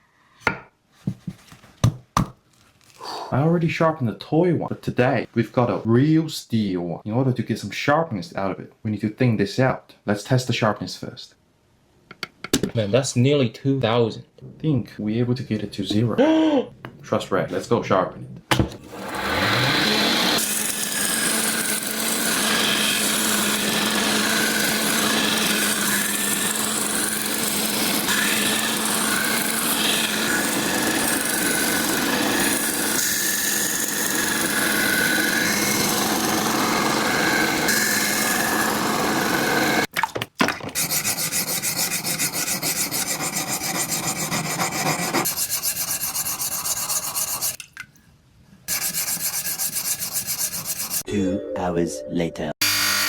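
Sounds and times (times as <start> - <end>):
rapid filing strokes: 19.1 - 39.9, 40.8 - 47.6, 48.7 - 51.1
knife grinding on abrasive: 40.9 - 47.6, 48.7 - 51.1.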